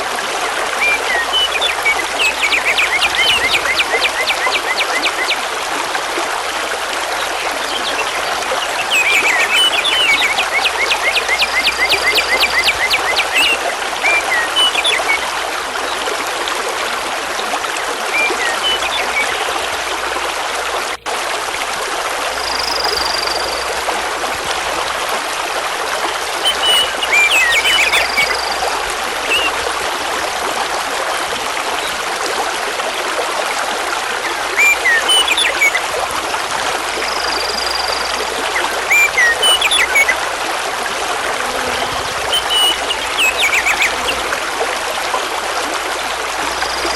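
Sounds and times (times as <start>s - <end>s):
small birds chirping: 1.0s - 5.4s, 7.3s - 15.2s, 26.4s - 29.6s, 41.4s - 44.4s
river rushing over stones: 38.2s - 46.9s.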